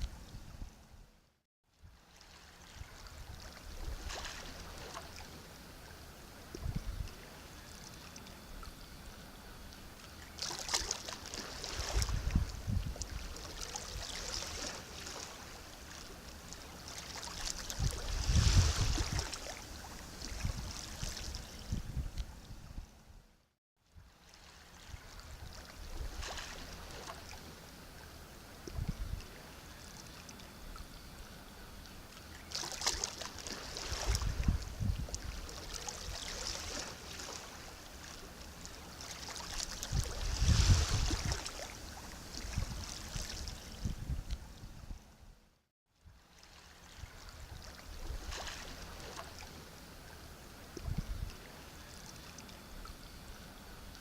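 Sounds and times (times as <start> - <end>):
sea waves breaking on shore: 2.0 - 5.8, 10.3 - 21.6, 24.1 - 27.8, 32.3 - 43.7, 46.2 - 49.8.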